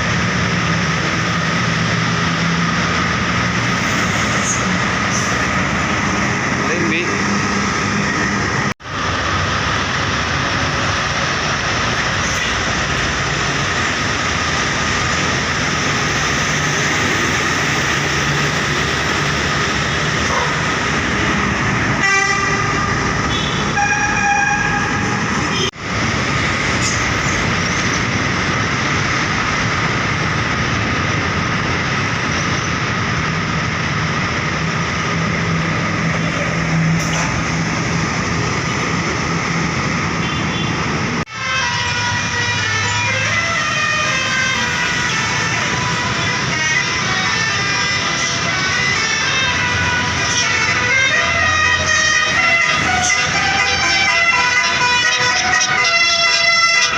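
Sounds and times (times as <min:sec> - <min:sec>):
heavy road traffic: 0:00.0 - 0:56.9
bus horn blasts: 0:22.0 - 0:25.8, 0:40.2 - 0:40.8, 0:51.0 - 0:56.9.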